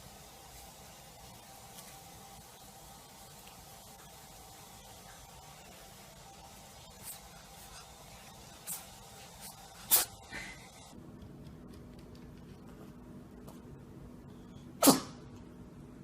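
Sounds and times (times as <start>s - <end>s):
cat sneezing: 9.8s - 10.6s, 14.8s - 15.2s.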